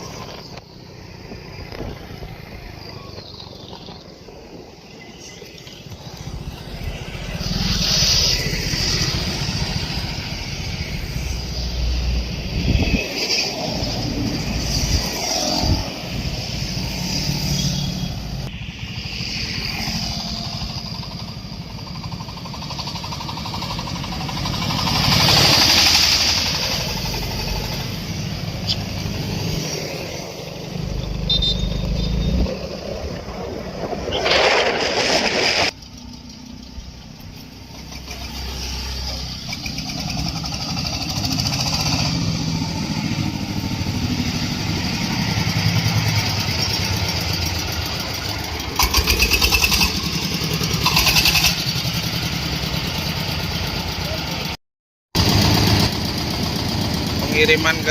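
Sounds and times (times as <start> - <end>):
rushing noise: 0.0 - 22.2, 23.6 - 35.8.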